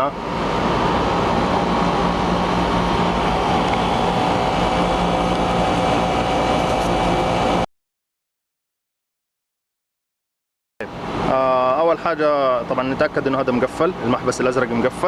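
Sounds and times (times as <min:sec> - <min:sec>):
air conditioner unit humming: 0:00.0 - 0:07.7, 0:10.8 - 0:15.0.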